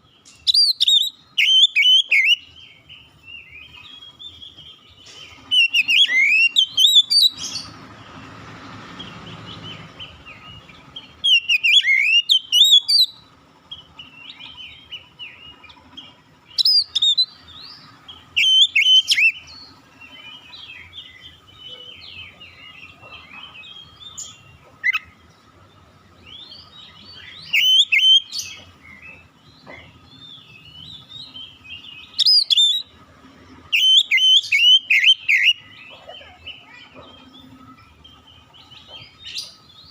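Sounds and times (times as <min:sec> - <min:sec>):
bird twittering: 0:00.0 - 0:07.8, 0:09.0 - 0:39.9
bird whistling phrases: 0:00.4 - 0:02.5, 0:05.5 - 0:07.4, 0:11.2 - 0:13.2, 0:16.6 - 0:17.4, 0:18.4 - 0:19.5, 0:27.2 - 0:28.5, 0:33.7 - 0:36.2.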